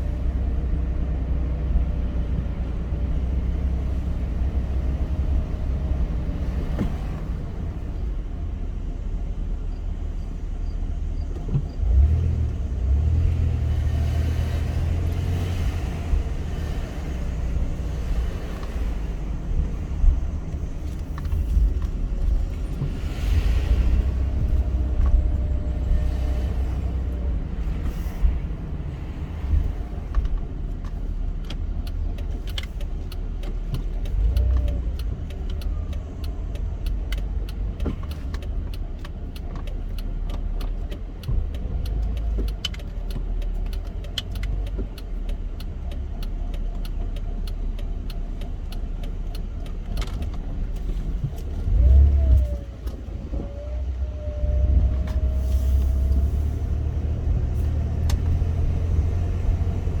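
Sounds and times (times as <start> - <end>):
car engine and road rumble: 0.0 - 60.0
light ticks and rattles: 29.4 - 53.8.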